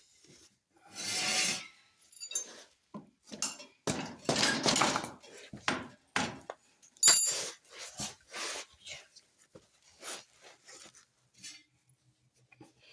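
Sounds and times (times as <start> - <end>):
metal tools clinking and clanking: 2.0 - 5.4, 6.8 - 7.7.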